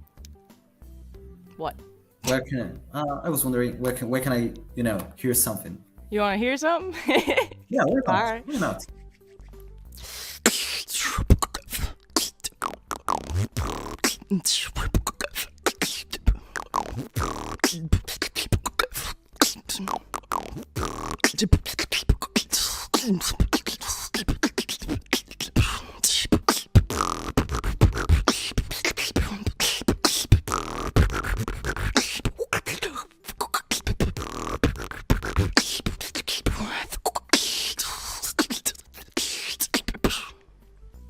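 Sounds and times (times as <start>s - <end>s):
person beatboxing: 10.0s - 40.4s.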